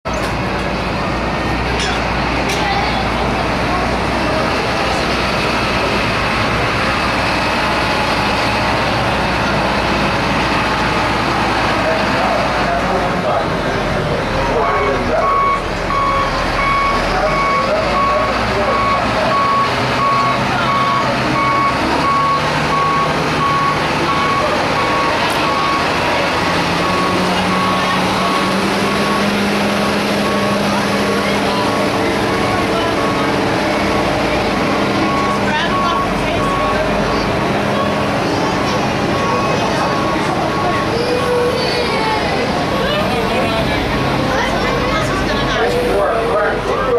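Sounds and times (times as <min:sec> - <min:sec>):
truck engine running loud: 0:00.0 - 0:46.9
reversing alarm beeping: 0:14.5 - 0:41.8.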